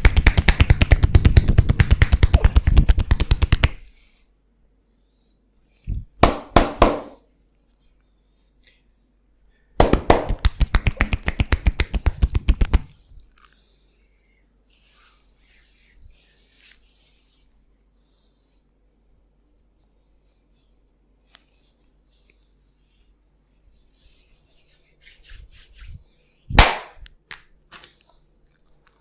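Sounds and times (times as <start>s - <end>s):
hands slapping skin: 0.0s - 3.8s, 6.2s - 7.2s, 9.8s - 13.0s, 26.5s - 27.9s
rapid hand tapping: 0.0s - 3.8s, 9.8s - 12.9s
hands rubbing oiled skin: 0.0s - 8.9s, 9.8s - 27.0s.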